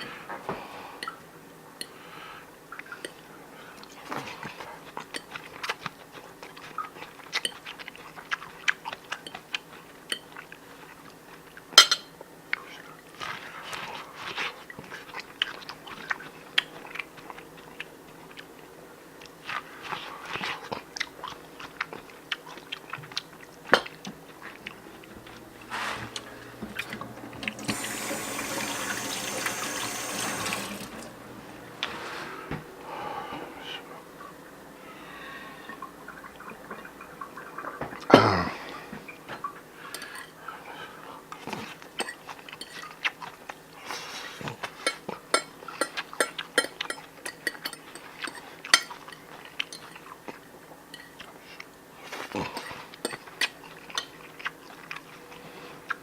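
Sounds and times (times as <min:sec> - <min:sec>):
dishes and cutlery clinking: 0:11.8 - 0:12.2, 0:42.0 - 0:43.0, 0:44.7 - 0:50.1, 0:50.9 - 0:51.3, 0:52.5 - 0:54.2
tap running: 0:24.6 - 0:31.9.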